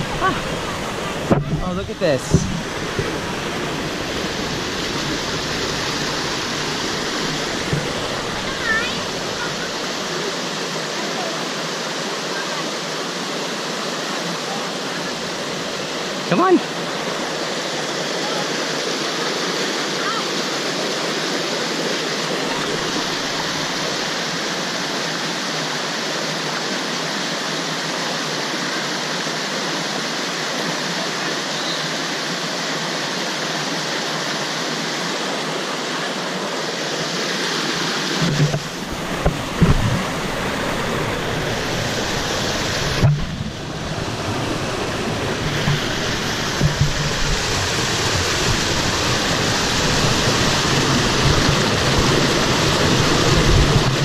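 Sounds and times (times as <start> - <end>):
waterfall rushing: 0.0 - 54.0
low thumps and rumbles: 38.2 - 40.4.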